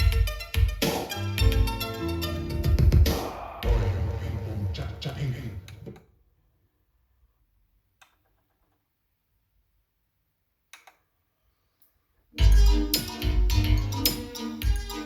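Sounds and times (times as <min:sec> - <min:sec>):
loud music with strong bass: 0:00.0 - 0:05.0, 0:12.4 - 0:15.0.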